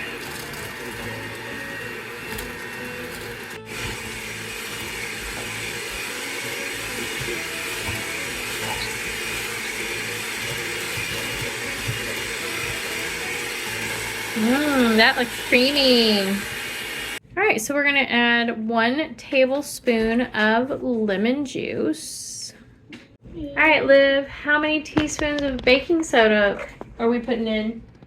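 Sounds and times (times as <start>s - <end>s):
electric mixer running: 0.0s - 17.2s.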